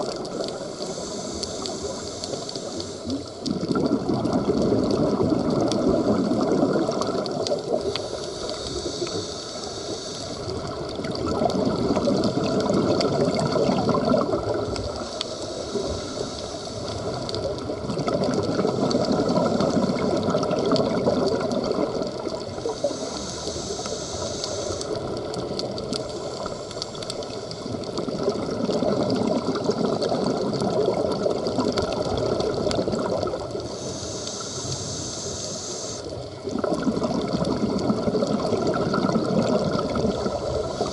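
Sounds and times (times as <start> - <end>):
regulator hiss on inhale: 0.0 - 3.7, 5.7 - 28.0, 32.5 - 36.8, 38.0 - 40.9
exhaled bubbles rushing: 3.1 - 8.1, 10.4 - 15.0, 16.8 - 22.9, 27.1 - 33.7, 36.2 - 40.9.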